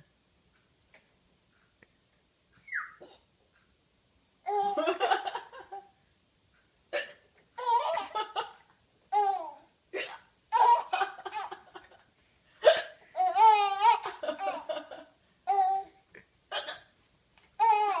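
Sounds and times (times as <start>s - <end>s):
baby laughing: 4.5s - 5.8s, 7.6s - 9.6s, 10.5s - 11.9s, 13.1s - 15.9s.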